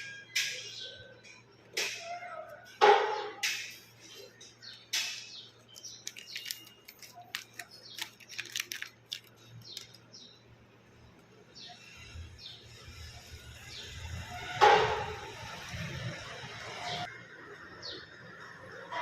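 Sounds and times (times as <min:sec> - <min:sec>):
plastic wrapper crinkling: 0:05.6 - 0:10.1.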